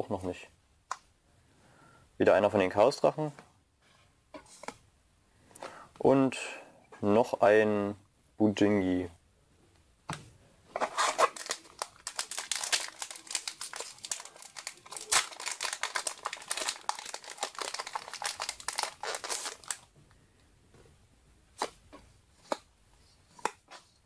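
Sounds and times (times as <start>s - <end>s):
foil wrapper crinkling and tearing: 10.9s - 19.9s.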